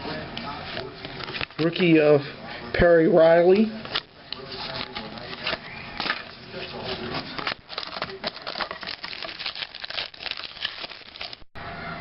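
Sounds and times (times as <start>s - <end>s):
trading cards crinkling and clicking: 0.7s - 1.9s, 3.8s - 11.4s.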